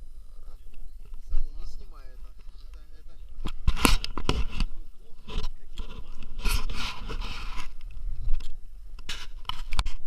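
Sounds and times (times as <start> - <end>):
scraping and rubbing: 3.3 - 10.0.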